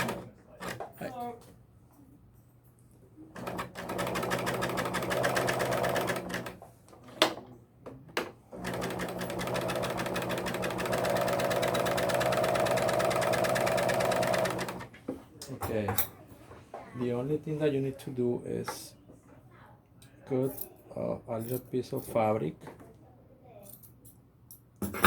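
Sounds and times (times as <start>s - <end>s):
serger stitching fabric: 3.4s - 6.6s, 8.6s - 14.9s.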